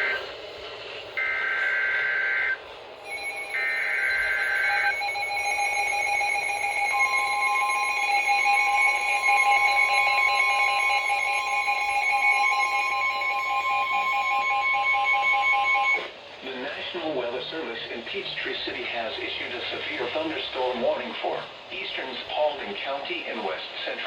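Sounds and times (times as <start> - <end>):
harsh digital data bursts: 1.2 - 16.0
steady electronic alert tone: 3.0 - 16.0
higher electronic tone: 3.0 - 16.1.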